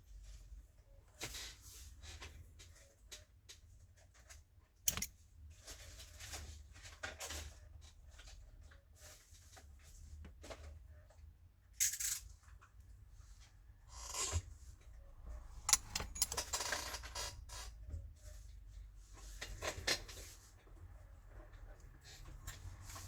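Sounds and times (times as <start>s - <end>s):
light clicks of small tools: 4.9s - 5.1s, 15.7s - 16.6s.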